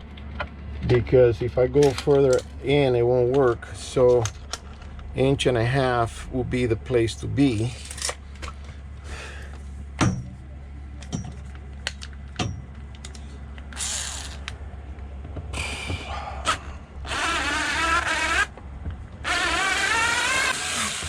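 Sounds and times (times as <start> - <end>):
steady low hum: 0.0 - 21.0
tools knocking and tapping: 11.0 - 11.5
power drill whining: 13.7 - 14.5, 15.6 - 18.6, 19.2 - 21.0.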